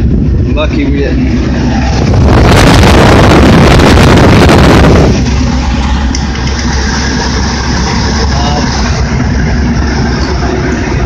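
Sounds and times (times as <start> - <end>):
air conditioning units humming: 0.0 - 11.0
wind buffeting microphone: 0.0 - 11.0.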